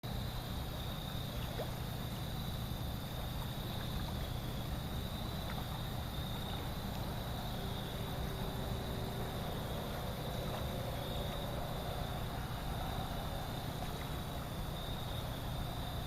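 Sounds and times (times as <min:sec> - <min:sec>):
river rushing: 0:04.0 - 0:16.0.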